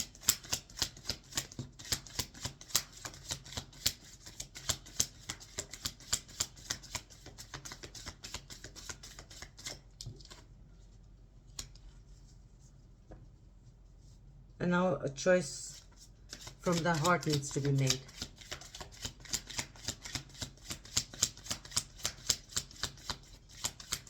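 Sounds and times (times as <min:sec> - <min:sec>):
cards being shuffled: 0:00.1 - 0:10.5, 0:15.7 - 0:24.0.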